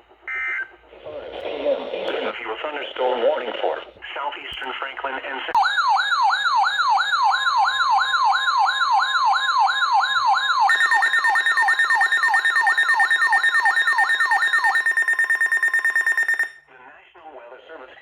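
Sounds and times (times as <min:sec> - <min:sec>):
siren-like warble: 0:10.3 - 0:16.6
steady alert tone: 0:10.7 - 0:16.6.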